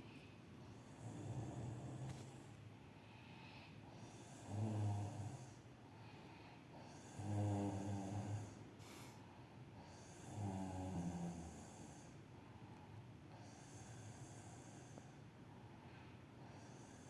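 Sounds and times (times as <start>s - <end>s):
soft breathing: 0.0s - 10.2s, 11.6s - 17.0s
person snoring: 7.0s - 9.1s.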